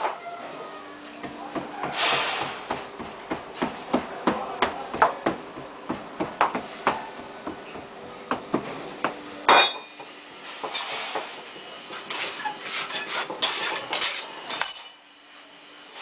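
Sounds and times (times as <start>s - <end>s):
metal hand tools clinking and scraping: 12.6s - 15.1s.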